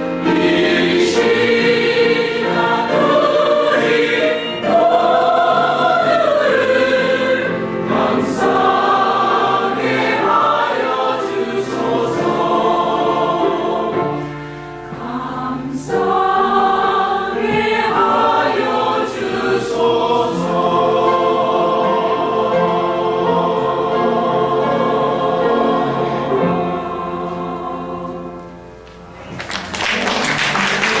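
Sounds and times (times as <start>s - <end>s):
choir singing a hymn: 0.0s - 28.8s
audience applause: 29.2s - 31.0s.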